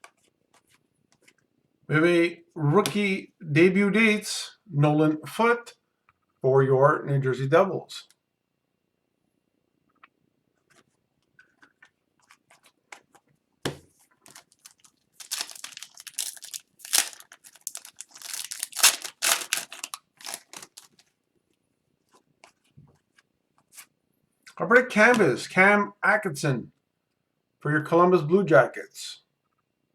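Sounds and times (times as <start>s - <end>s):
foil wrappers crinkling and rustling: 14.2s - 21.1s.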